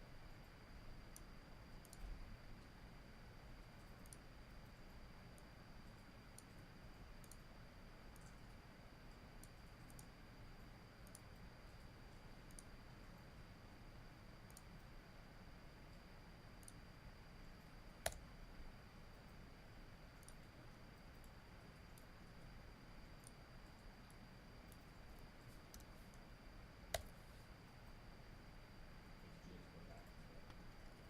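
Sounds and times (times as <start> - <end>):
faint high whine: 0.0 - 31.0
computer mouse clicks: 1.0 - 2.7, 3.8 - 7.5, 8.1 - 8.6, 9.4 - 13.2, 14.4 - 14.9, 16.6 - 16.8, 17.4 - 18.3, 20.2 - 26.2, 26.9 - 27.2.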